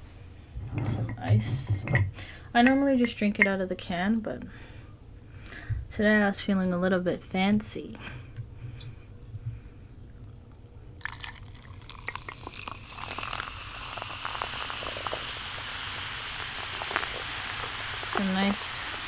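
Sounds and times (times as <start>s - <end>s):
drink poured into a glass: 11.0s - 19.0s
fizzing hiss with crackles: 11.0s - 19.0s.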